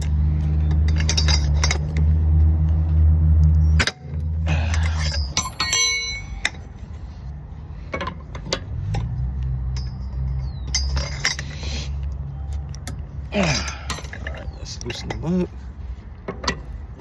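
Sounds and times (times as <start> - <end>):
socket clanging on lug nuts: 3.8 - 6.6, 9.7 - 11.6.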